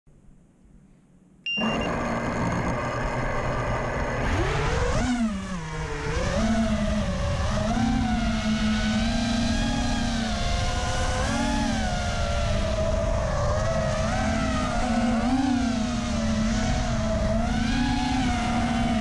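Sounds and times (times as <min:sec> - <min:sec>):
high beep: 0:01.5 - 0:02.0
quadcopter motors and propellers: 0:01.5 - 0:19.0.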